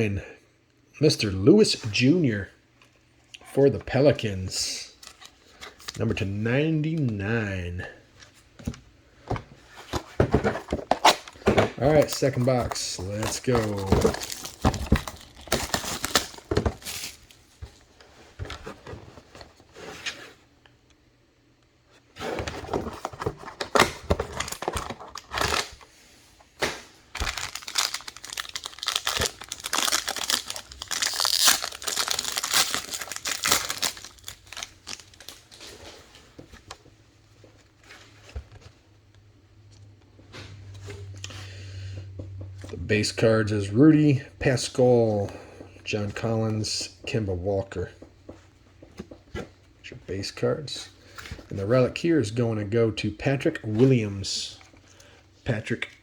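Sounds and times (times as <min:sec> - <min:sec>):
plastic wrapping crinkling: 0:10.8 - 0:17.6, 0:27.1 - 0:35.9.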